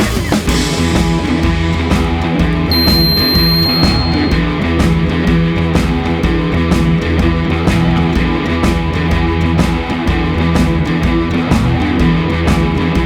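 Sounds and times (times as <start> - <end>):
rock music with guitar: 0.0 - 13.0
high electronic beep: 2.7 - 4.4.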